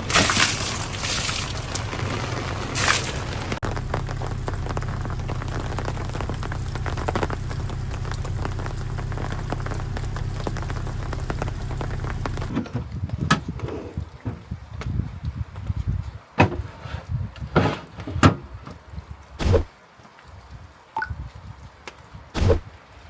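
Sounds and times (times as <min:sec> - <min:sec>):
low steady hum: 0:00.0 - 0:12.5
rain pattering: 0:00.0 - 0:13.3, 0:14.0 - 0:16.3, 0:18.7 - 0:23.0.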